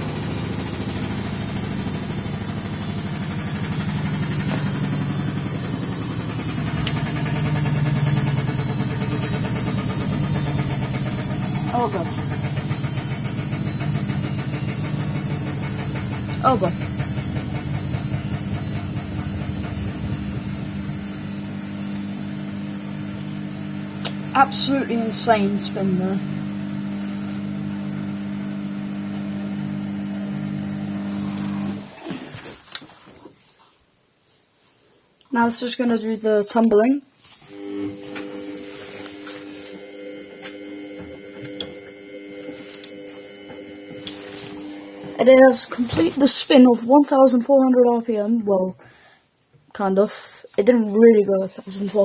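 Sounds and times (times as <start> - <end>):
washing machine cabinet rattling: 0.0 - 21.8
washing machine motor humming: 0.0 - 33.1, 37.4 - 46.6.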